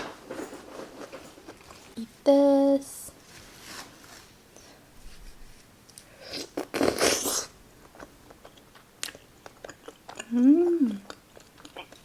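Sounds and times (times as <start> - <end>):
faint chewing clicks: 7.8 - 12.0.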